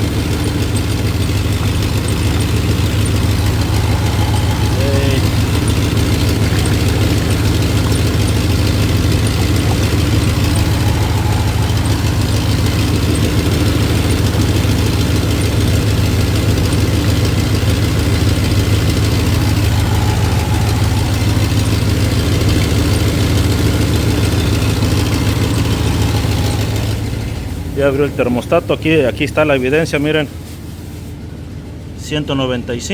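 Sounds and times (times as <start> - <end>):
car engine idling: 0.0 - 32.9
exhaust leak noise: 0.0 - 32.9.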